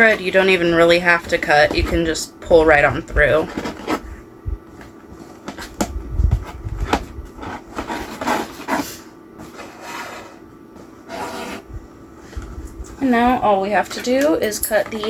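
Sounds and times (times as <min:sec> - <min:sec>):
packaging rubbing and scraping: 0:00.0 - 0:04.2, 0:04.8 - 0:11.7.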